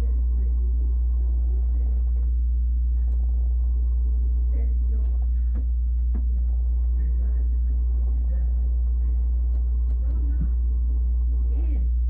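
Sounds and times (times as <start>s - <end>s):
loud low hum: 0.0s - 12.0s
click: 3.0s - 3.3s.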